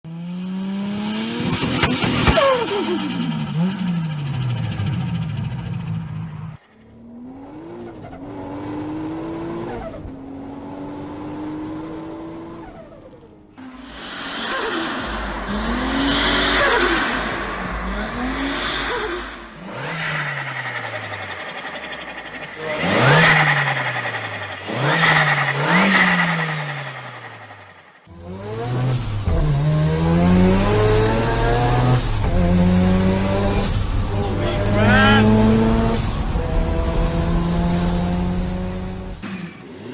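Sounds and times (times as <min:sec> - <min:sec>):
car engine at high revs: 0:00.1 - 0:39.9
engine accelerating: 0:00.1 - 0:39.9.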